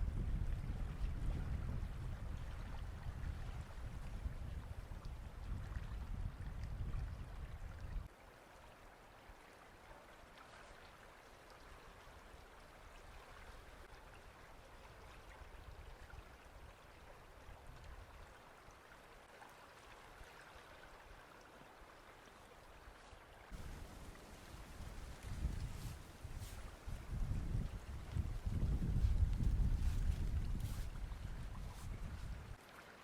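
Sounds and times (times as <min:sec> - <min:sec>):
wind rumble on microphone: 0:00.0 - 0:08.1, 0:14.9 - 0:18.3, 0:23.5 - 0:32.6
faint rushing hiss: 0:23.6 - 0:27.7.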